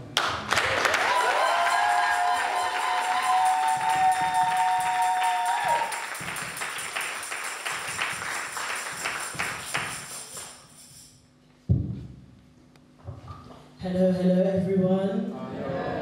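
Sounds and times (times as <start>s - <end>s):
gospel music: 0.6s - 11.0s
tambourine or claps beat: 1.2s - 11.2s.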